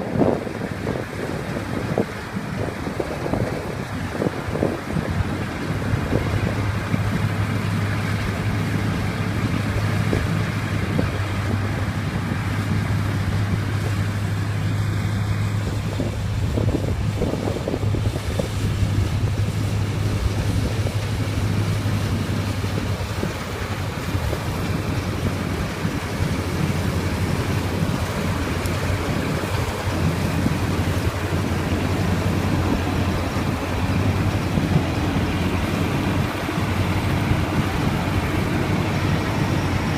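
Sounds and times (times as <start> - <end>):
combine harvester running: 0.0 - 39.9.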